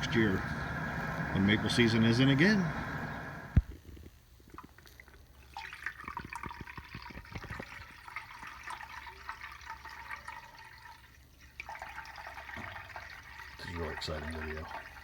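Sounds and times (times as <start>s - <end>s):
low steady hum: 0.0s - 6.1s
sap bubbling and crackling: 0.0s - 15.0s.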